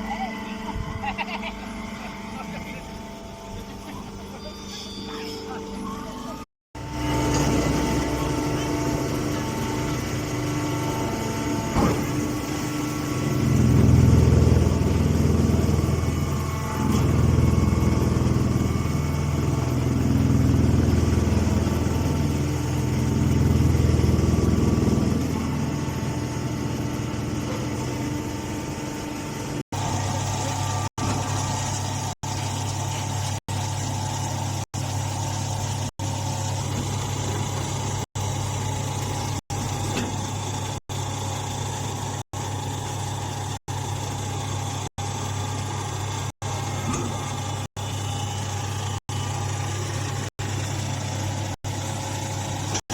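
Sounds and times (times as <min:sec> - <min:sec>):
hay baler engine running: 0:06.8 - 0:33.4.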